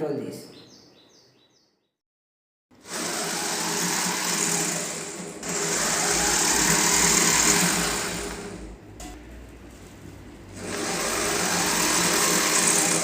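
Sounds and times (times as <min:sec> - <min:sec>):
small electric motors whirring: 0:02.8 - 0:08.8, 0:10.6 - 0:13.0.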